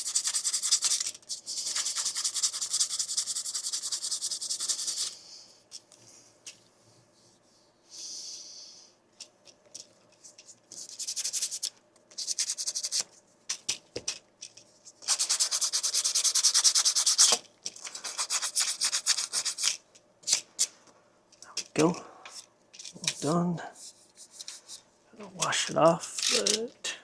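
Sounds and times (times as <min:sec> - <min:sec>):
sandpaper rasping on plastic: 0:00.0 - 0:05.2, 0:10.8 - 0:13.1, 0:15.0 - 0:19.8.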